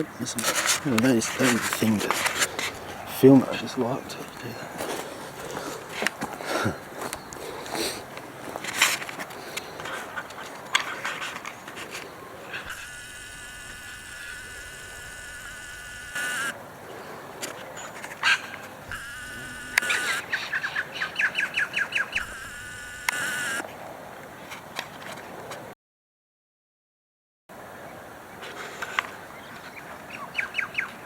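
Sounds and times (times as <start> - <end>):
insect buzzing: 12.5 - 16.6, 18.2 - 23.6
quick buzzing pulses: 12.5 - 16.6, 18.8 - 23.6
sharp clicks: 18.9 - 20.4, 21.4 - 23.6.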